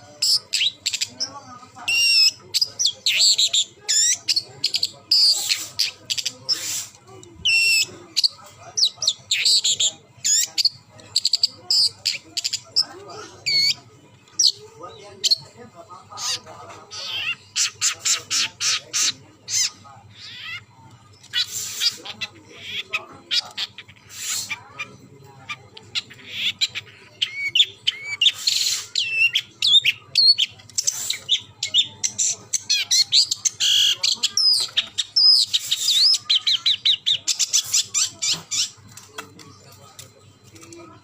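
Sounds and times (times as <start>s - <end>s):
bird singing: 0.0s - 41.0s.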